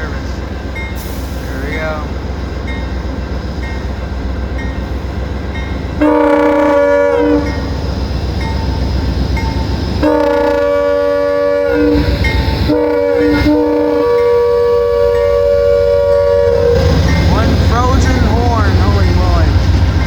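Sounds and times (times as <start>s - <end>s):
locomotive air horn blasts: 6.0s - 7.6s, 10.0s - 17.0s
diesel engine rumble: 13.4s - 20.0s.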